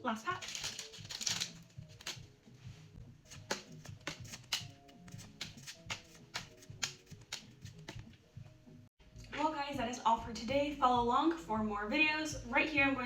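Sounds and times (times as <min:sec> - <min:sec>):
quiet background music: 0:00.0 - 0:13.0
trading cards flipped by hand: 0:00.4 - 0:02.4, 0:03.3 - 0:08.2.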